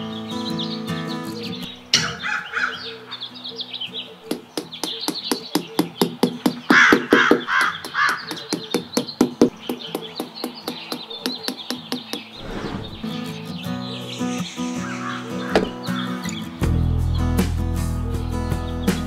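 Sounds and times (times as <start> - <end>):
bird cawing: 2.0 - 3.4, 6.7 - 8.8, 14.6 - 16.3
background music with clicking beat: 15.4 - 19.0.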